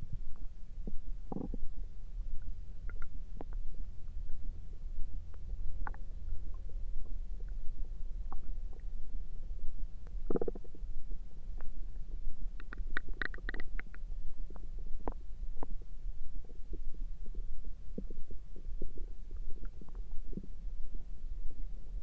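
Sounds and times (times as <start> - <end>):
stomach gurgling: 0.0 - 1.8, 2.4 - 4.3, 5.3 - 8.9, 10.1 - 10.9, 12.6 - 20.6
steady low rumble: 0.0 - 22.0
small clicks: 12.6 - 14.0.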